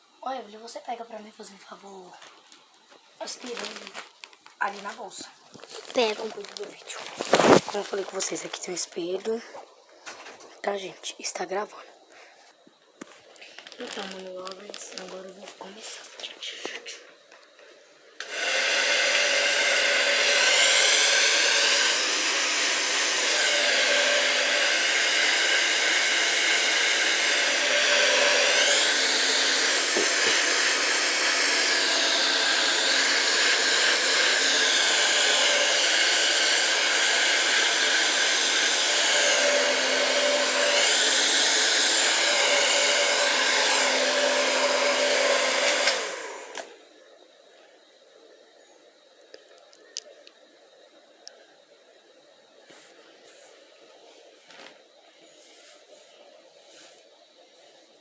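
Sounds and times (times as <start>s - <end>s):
hair dryer running: 4.7s - 8.2s, 18.2s - 46.8s.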